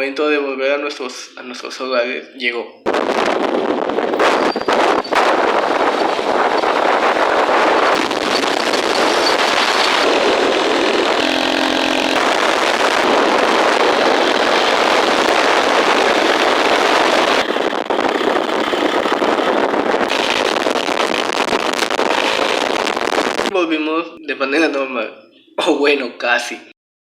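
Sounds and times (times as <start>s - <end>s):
motorcycle engine and wind rushing: 2.9s - 23.5s.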